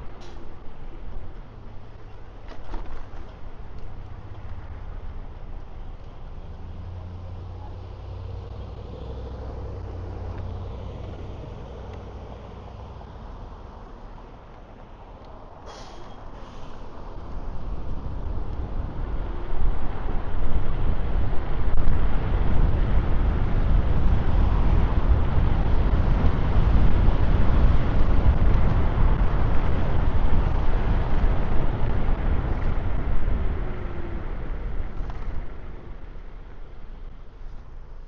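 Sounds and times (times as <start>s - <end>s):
road noise: 0.0s - 38.0s
wind buffeting microphone: 16.5s - 38.0s.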